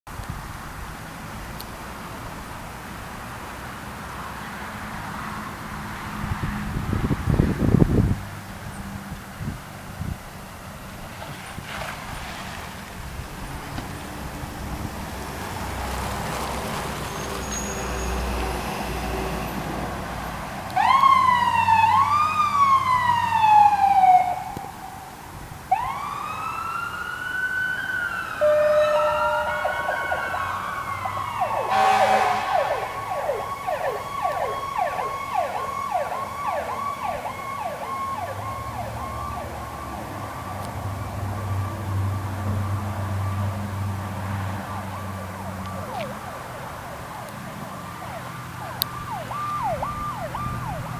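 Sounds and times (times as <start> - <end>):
vehicle rumble: 0.1 - 50.9
ambulance electronic siren: 20.7 - 25.0, 25.7 - 40.7, 44.6 - 50.9
air horn tone: 28.4 - 29.8, 31.6 - 33.0.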